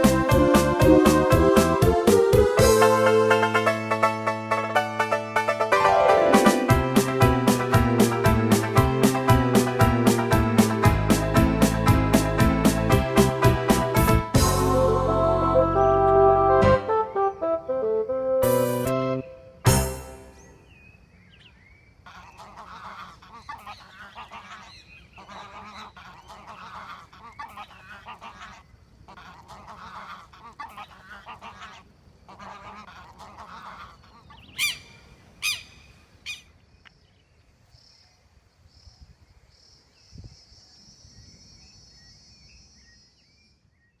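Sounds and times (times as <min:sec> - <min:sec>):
geese honking: 0:00.0 - 0:12.4, 0:22.0 - 0:36.5.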